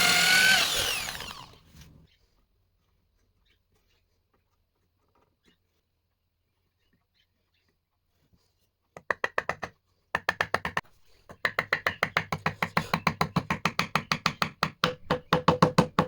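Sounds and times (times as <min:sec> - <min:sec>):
rapid knocking on wood: 0:09.1 - 0:16.0.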